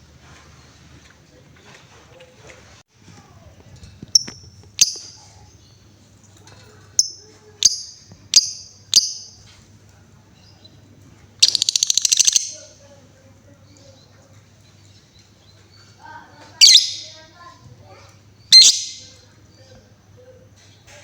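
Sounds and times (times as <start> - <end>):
lovebird chirping and trilling: 4.1 - 5.8, 7.0 - 9.4, 11.4 - 12.7, 16.6 - 17.3, 18.4 - 19.2.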